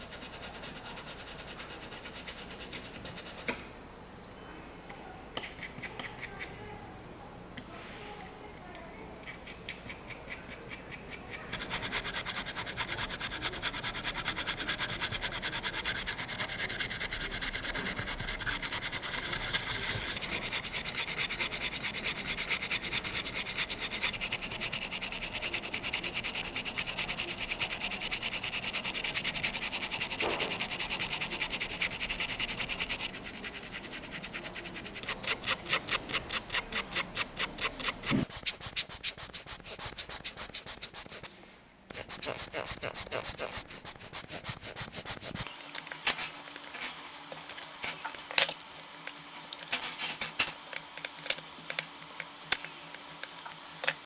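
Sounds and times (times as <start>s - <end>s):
rhythmic rubbing or scrubbing: 9.4s - 41.3s, 41.9s - 45.5s.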